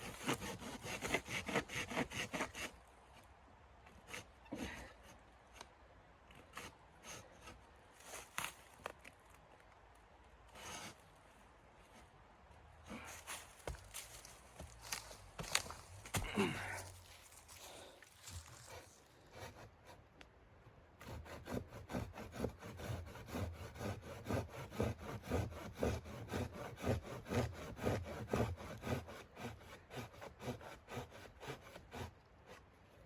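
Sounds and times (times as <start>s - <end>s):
hand saw cutting wood: 0.0s - 2.8s, 4.0s - 4.9s, 6.3s - 8.5s, 10.5s - 11.0s, 18.6s - 20.0s, 21.0s - 32.7s.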